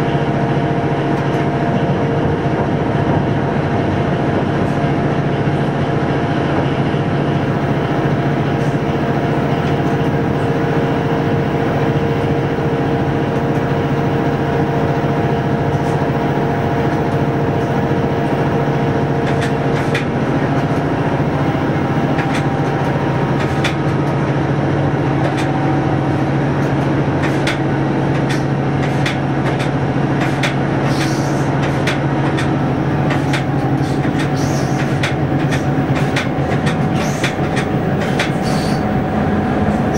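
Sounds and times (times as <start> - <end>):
train drone in cab: 0.0 - 39.9
wheels clicking over rail joints: 11.8 - 24.4, 25.2 - 25.6, 26.6 - 39.0.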